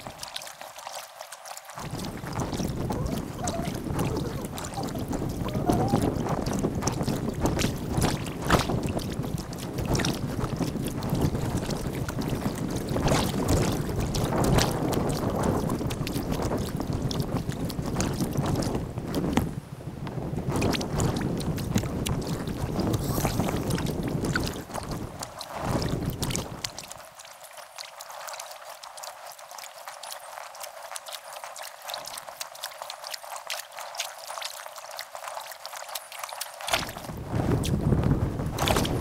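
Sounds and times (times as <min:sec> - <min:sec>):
kayak paddle splashes: 0:00.0 - 0:19.6, 0:20.2 - 0:39.0
wind rumbling on microphone: 0:01.8 - 0:27.1, 0:36.6 - 0:39.0.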